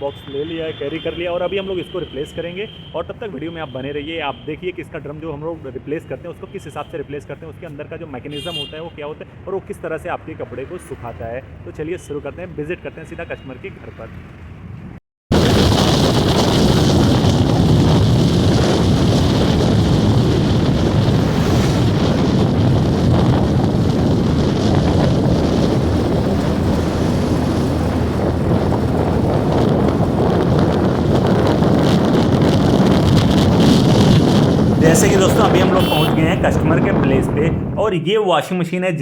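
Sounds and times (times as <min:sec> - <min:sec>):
moving vehicle running noise: 0:13.9 - 0:37.8
wind rushing over microphone: 0:15.3 - 0:38.0.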